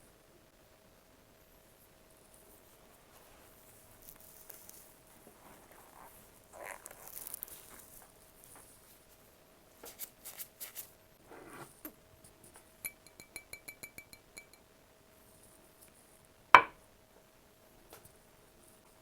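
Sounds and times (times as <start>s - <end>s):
dishes clicking: 12.8s - 14.6s
sharp ringing ticks: 12.8s - 14.7s.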